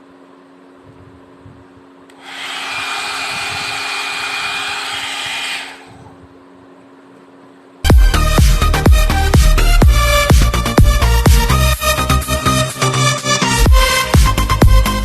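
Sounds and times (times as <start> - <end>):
faint steady hum: 0.0 - 7.9
hair dryer blowing: 2.1 - 6.1.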